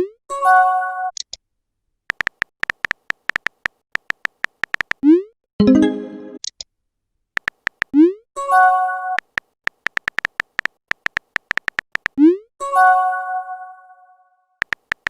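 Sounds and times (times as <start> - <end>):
quick keyboard taps: 2.1 - 5.0, 7.4 - 7.9, 9.2 - 12.2, 14.6 - 15.0
rising message sent pop: 5.6 - 6.4.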